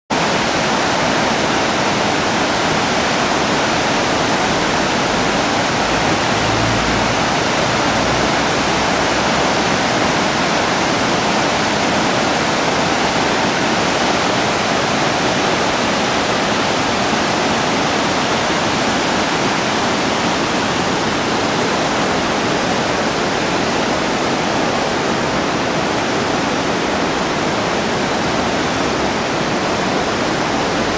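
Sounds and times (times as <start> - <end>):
river water rushing: 0.1 - 30.9.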